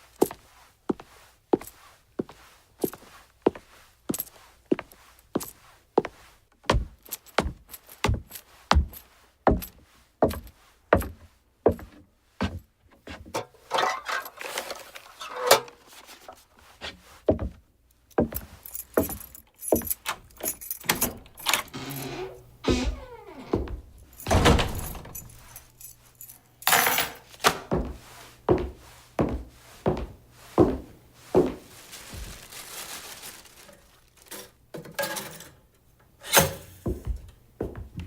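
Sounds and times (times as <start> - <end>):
jangling rattling noise: 18.7 - 27.3.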